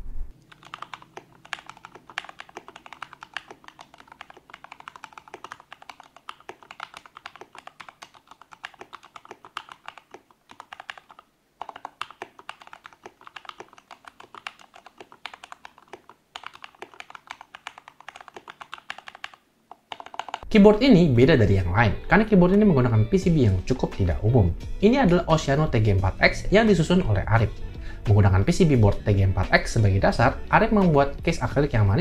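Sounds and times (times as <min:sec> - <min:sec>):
mechanical keyboard typing: 0:00.4 - 0:20.5.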